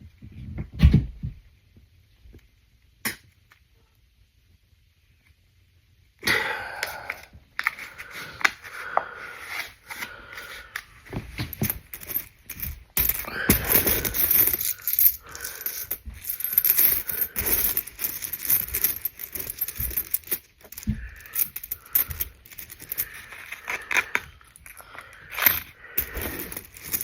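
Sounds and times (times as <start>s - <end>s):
coins clinking: 11.5s - 27.0s.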